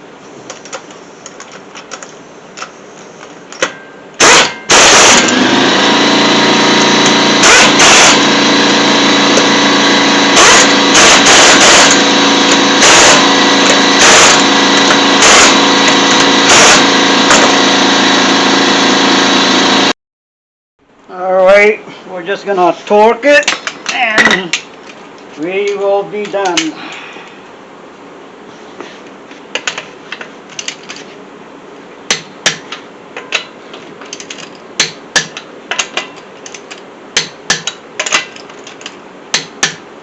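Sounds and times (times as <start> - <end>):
impact wrench rattling bursts: 4.2 - 19.9
power tool running: 4.2 - 19.9.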